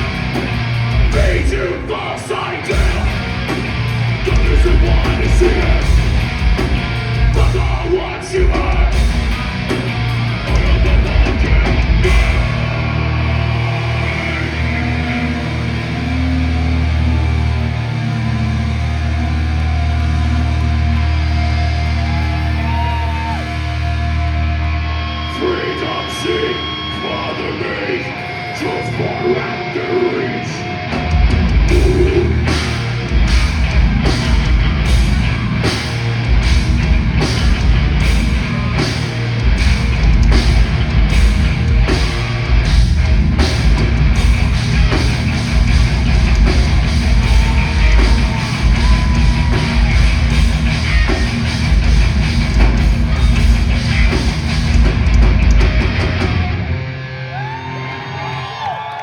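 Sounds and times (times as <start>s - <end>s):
heavy metal band playing live: 0.0s - 58.9s
drums striking cymbal: 31.0s - 56.5s.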